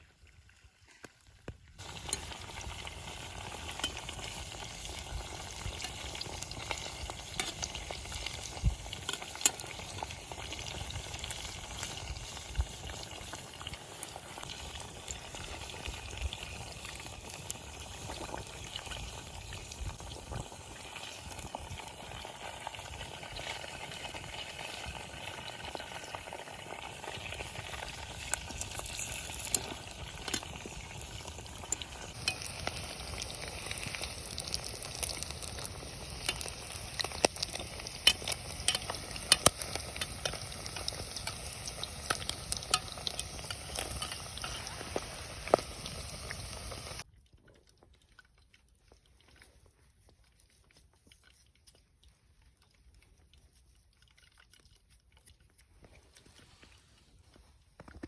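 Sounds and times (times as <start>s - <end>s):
sharp pops and crackles: 0.9s - 47.1s, 55.6s - 58.0s
meat sizzling: 1.8s - 47.0s.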